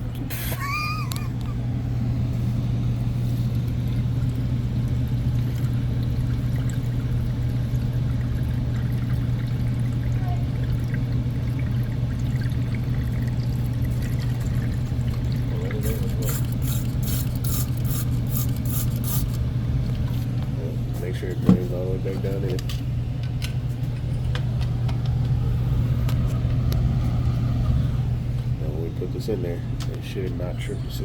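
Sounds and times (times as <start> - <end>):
air conditioner humming: 0.0 - 31.0
water pouring into drain: 3.1 - 19.2.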